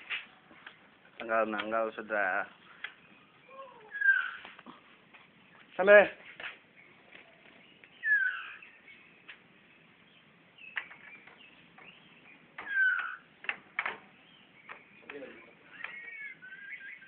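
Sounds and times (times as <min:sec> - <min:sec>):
songbird whistled notes: 0:07.9 - 0:09.2
sharp taps and clicks: 0:10.7 - 0:16.0.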